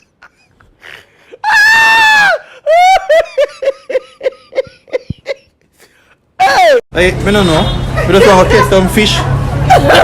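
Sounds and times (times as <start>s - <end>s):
woman laughing: 0.0s - 1.5s, 2.3s - 5.6s, 8.0s - 8.9s, 9.6s - 10.0s
woman shrieking: 1.3s - 3.2s, 6.4s - 6.8s.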